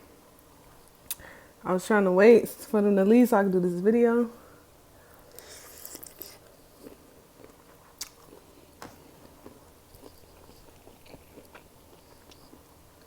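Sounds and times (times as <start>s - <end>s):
person chewing: 5.3s - 13.0s.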